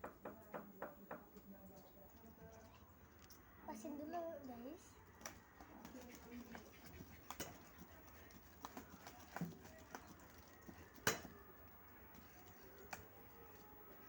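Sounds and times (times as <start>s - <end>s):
chewing smacks: 5.2s - 11.4s.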